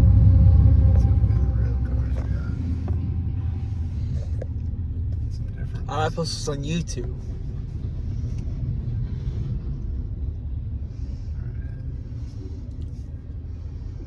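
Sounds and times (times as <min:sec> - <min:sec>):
freight train rumbling past: 0:00.0 - 0:08.2.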